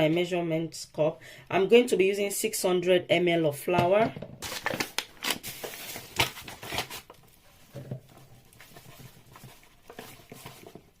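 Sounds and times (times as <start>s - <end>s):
flour rustling: 5.5s - 11.0s.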